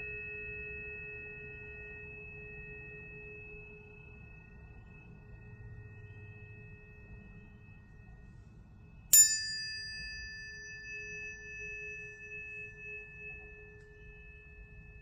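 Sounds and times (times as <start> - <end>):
tuning fork ringing: 0.0 - 15.0.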